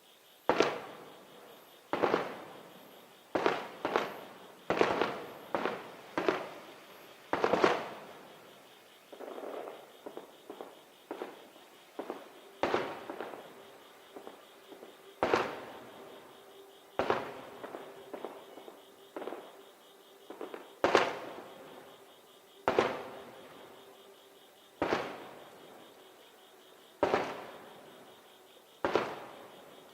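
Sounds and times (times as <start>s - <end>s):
small firework pops: 0.5s - 0.9s, 1.9s - 2.4s, 3.3s - 6.5s, 7.3s - 8.0s, 15.2s - 15.6s, 17.0s - 19.5s, 20.3s - 21.3s, 22.6s - 23.1s, 24.8s - 25.2s, 27.0s - 27.5s, 28.8s - 29.3s.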